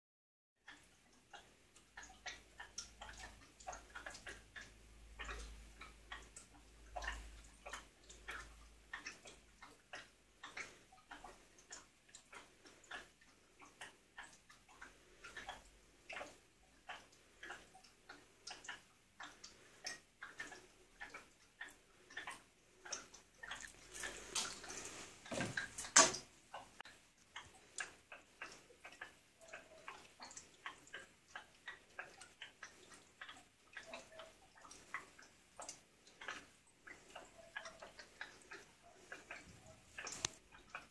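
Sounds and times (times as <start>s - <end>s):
fermenting wine popping: 22.9s - 28.3s.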